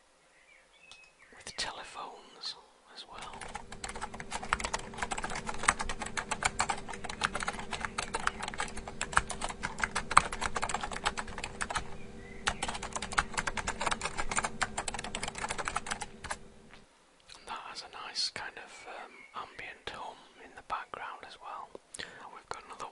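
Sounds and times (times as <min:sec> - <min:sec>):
steady ambient hum: 0:00.0 - 0:22.9
computer keyboard typing: 0:03.2 - 0:16.4.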